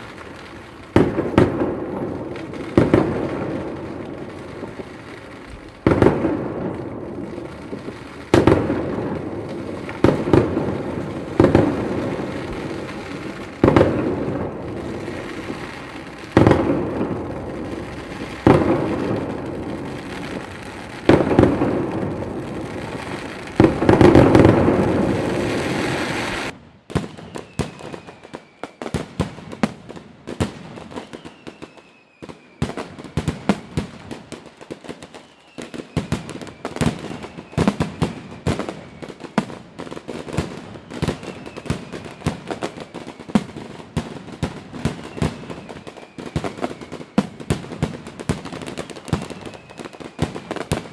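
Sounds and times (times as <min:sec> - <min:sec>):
falling firework whistles: 0:00.0 - 0:50.9
firework crackling pops: 0:00.0 - 0:50.9
firework shells booming: 0:00.8 - 0:28.1.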